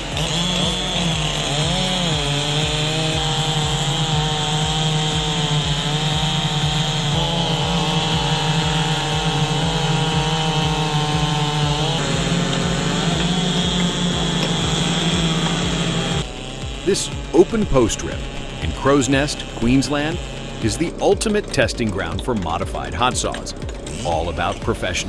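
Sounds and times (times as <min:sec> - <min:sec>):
chainsaw cutting wood: 0:00.0 - 0:25.0.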